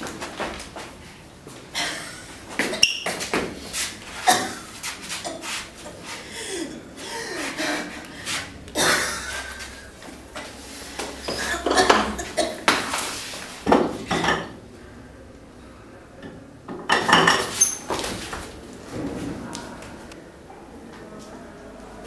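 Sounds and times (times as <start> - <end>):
dishes and cutlery clinking: 11.2 - 12.6, 13.8 - 14.6, 16.8 - 18.0.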